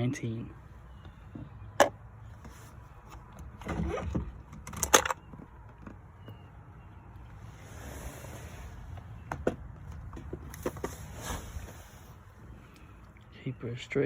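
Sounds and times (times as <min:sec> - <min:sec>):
rough scraping rustle: 0:07.4 - 0:09.0, 0:10.5 - 0:12.6.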